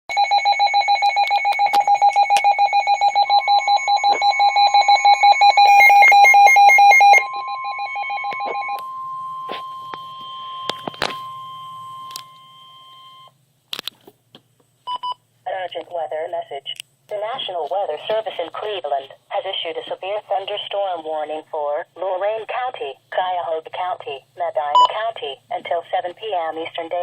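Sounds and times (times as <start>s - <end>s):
steady warning alarm tone: 0.1s - 13.3s
rapid electronic pulsing beep: 0.7s - 13.2s.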